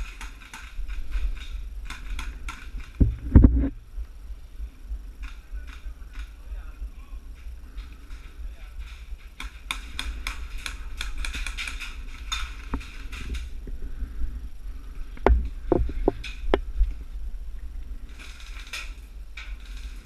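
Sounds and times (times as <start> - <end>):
sharp clicks and knocks: 0.0 - 3.8, 8.8 - 13.5
steady low rumble: 0.0 - 20.0.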